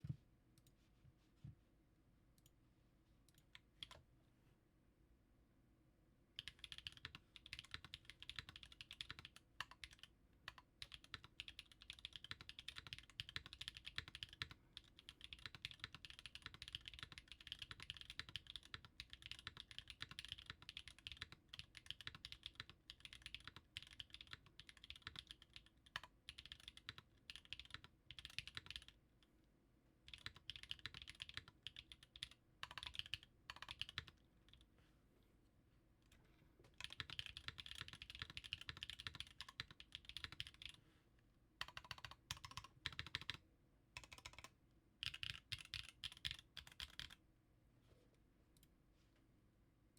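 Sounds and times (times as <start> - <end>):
mechanical keyboard typing: 6.4 - 28.9, 30.1 - 34.2, 36.8 - 40.8, 41.6 - 43.4, 44.0 - 47.2.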